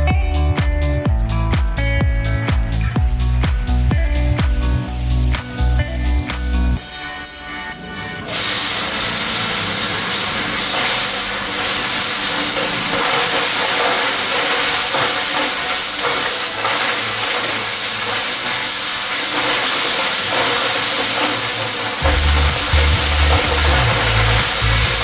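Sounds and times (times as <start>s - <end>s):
stuffing vacuum rushing hiss: 8.3s - 25.0s.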